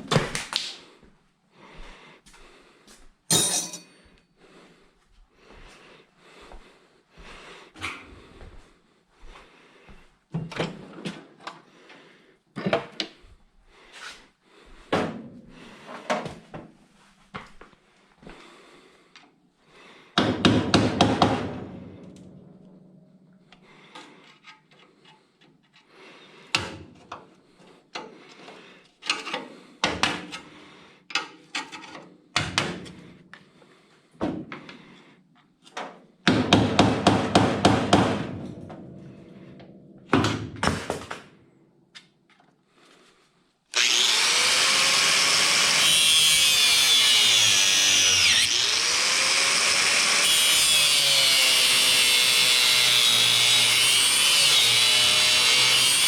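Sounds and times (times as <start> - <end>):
power tool running: 43.7 - 56.0.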